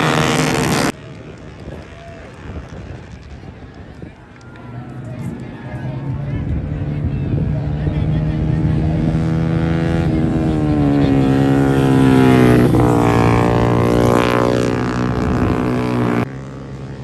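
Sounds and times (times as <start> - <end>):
motorcycle passing: 0.0 - 0.9, 4.6 - 17.0
racing motorcycle engines: 0.0 - 17.0.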